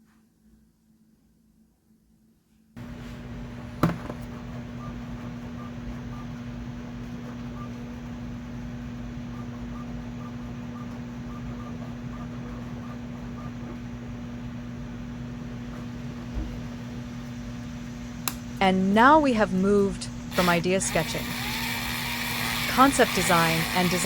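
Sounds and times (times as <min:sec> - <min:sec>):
power drill motor humming: 0:20.3 - 0:24.0.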